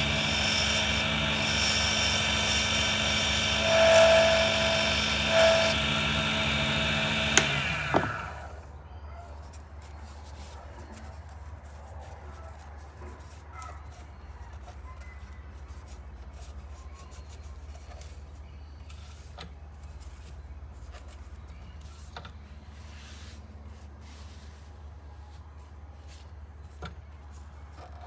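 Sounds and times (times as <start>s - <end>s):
lathe humming: 0.0s - 8.6s
tool scraping spinning blank: 0.0s - 8.6s.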